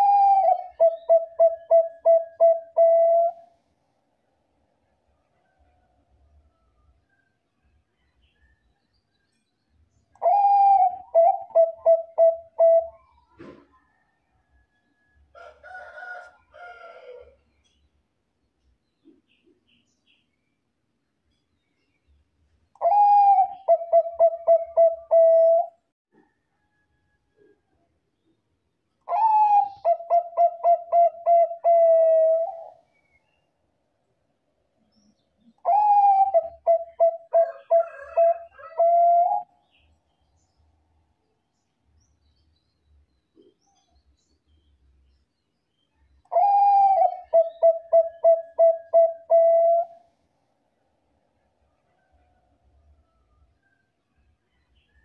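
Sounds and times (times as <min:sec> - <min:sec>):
dove cooing: 0:00.0 - 0:03.5, 0:10.2 - 0:13.6, 0:22.8 - 0:25.8, 0:29.1 - 0:32.8, 0:35.6 - 0:39.5, 0:46.3 - 0:50.0.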